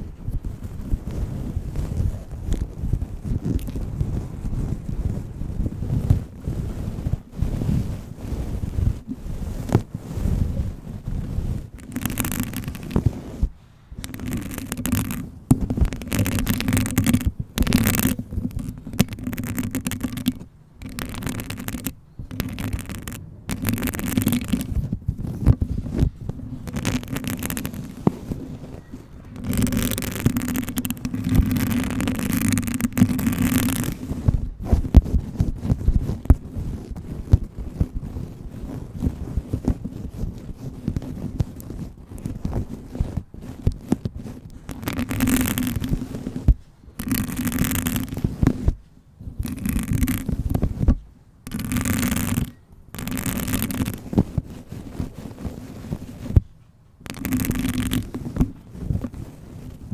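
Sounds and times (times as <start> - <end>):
fingernails scratching fabric: 0.0 - 59.9.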